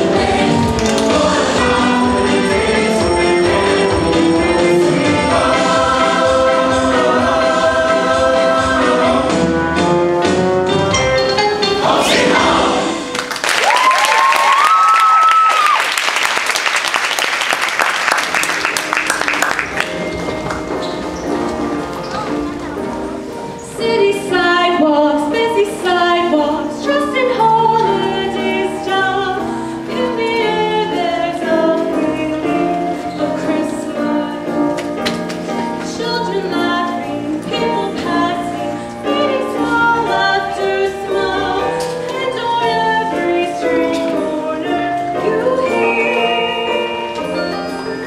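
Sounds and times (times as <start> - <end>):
choir singing in harmony: 0.0 - 13.4, 23.6 - 35.0, 35.6 - 48.0.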